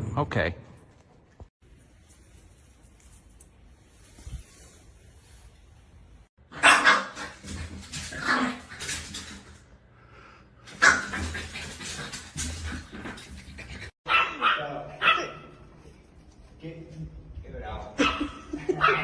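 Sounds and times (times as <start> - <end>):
dog barking: 6.5 - 7.4, 14.0 - 15.6, 18.0 - 19.0.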